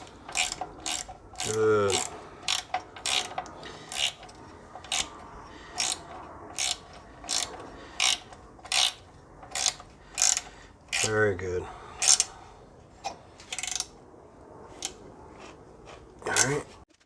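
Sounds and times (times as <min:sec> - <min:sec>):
ratchet wrench clicking: 0:00.0 - 0:05.2, 0:05.8 - 0:11.1, 0:12.0 - 0:12.4, 0:13.4 - 0:13.9.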